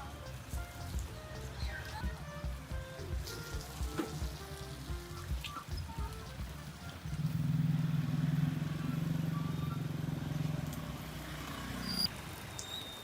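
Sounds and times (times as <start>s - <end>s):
motorbike engine running: 2.0s - 12.0s.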